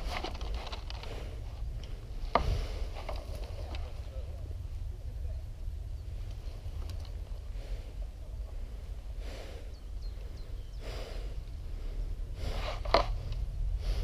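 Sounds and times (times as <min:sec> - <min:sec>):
steady low rumble: 0:00.0 - 0:14.0
person breathing heavily: 0:01.0 - 0:03.3, 0:07.4 - 0:14.0.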